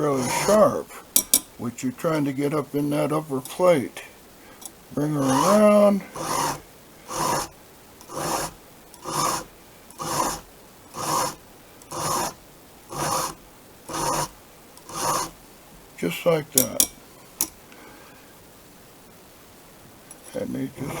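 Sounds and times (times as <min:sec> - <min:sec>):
file rasping on chain: 0:00.0 - 0:00.7, 0:05.2 - 0:15.4.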